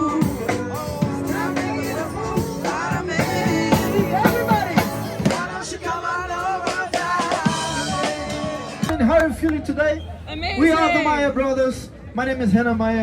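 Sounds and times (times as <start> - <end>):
person singing: 0.0 - 8.9
drum kit beat: 0.0 - 9.1.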